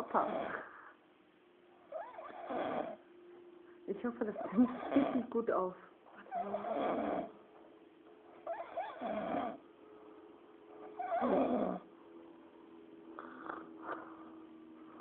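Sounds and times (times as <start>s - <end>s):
man snoring: 2.0s - 3.0s, 4.7s - 5.2s, 6.3s - 7.3s, 8.8s - 9.6s, 11.0s - 11.9s.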